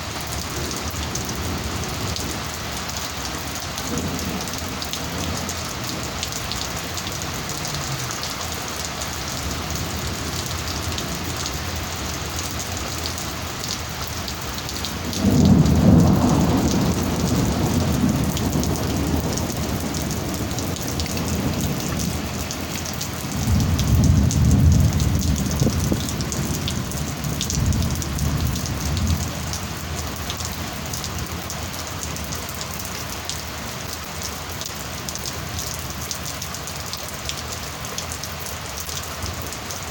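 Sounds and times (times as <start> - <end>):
heavy rain hissing: 0.0 - 35.5
thunder rumbling: 14.9 - 30.3.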